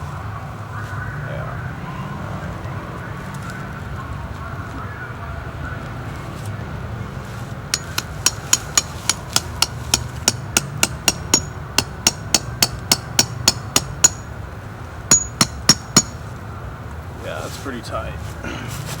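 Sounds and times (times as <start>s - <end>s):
hammer striking metal stake: 7.7s - 14.3s, 15.1s - 16.2s.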